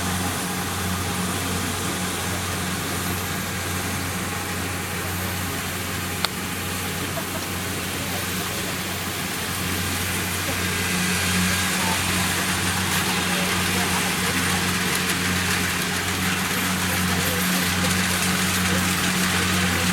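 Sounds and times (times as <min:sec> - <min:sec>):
combine harvester running: 0:00.0 - 0:19.9.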